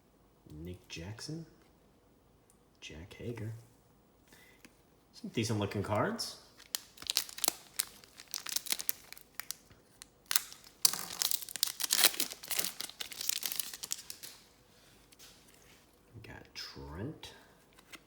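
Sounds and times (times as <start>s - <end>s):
foil wrapper crinkling and tearing: 6.5s - 14.5s
cards clicking and rustling: 10.3s - 14.4s.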